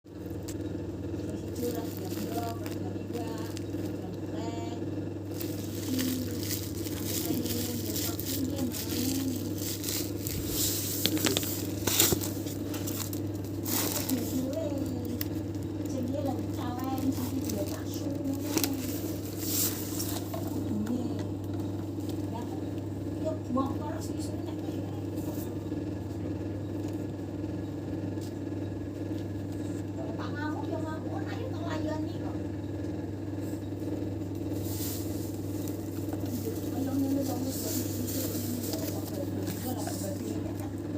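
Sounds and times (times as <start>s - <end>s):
steady low hum: 0.1s - 40.9s
packaging rustling and tearing: 1.4s - 4.0s, 5.3s - 20.6s, 34.5s - 40.2s.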